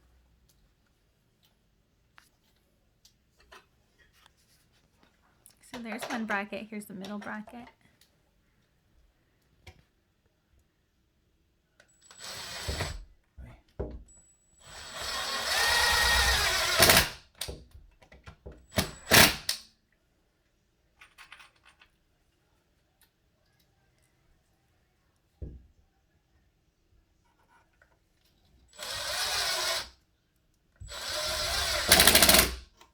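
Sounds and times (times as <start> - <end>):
power drill driving screws: 12.0 - 13.1, 14.6 - 17.3, 18.7 - 19.6, 28.7 - 30.0, 30.8 - 32.6.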